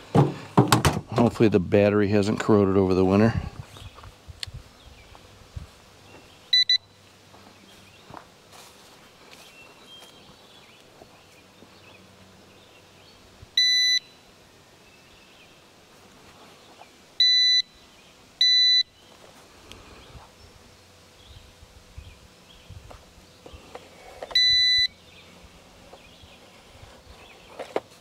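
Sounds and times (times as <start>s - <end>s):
metal detector beeping: 6.5s - 6.9s, 13.6s - 14.2s, 17.2s - 17.7s, 18.4s - 18.9s, 24.3s - 25.0s.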